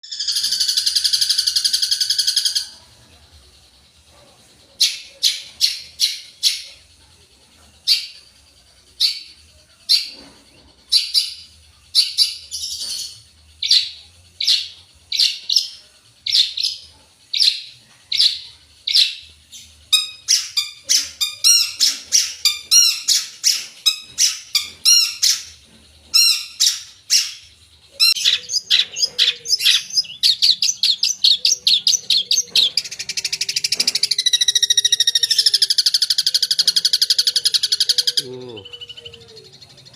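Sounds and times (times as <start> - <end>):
shrike singing: 10.8 - 39.9.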